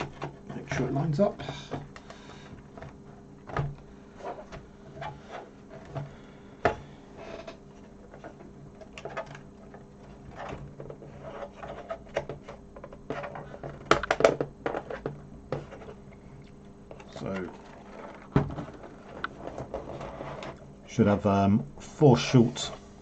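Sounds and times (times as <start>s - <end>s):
faint steady hum: 0.0s - 23.0s
plastic parts clicking and knocking: 8.1s - 16.0s.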